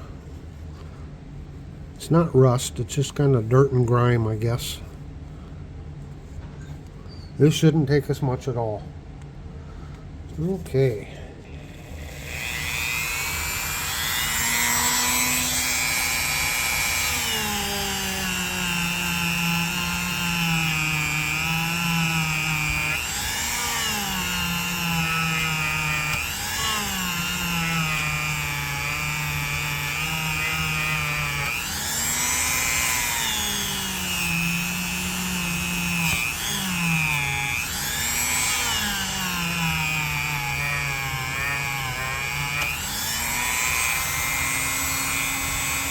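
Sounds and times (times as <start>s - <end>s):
rotary tool whining: 10.4s - 45.9s.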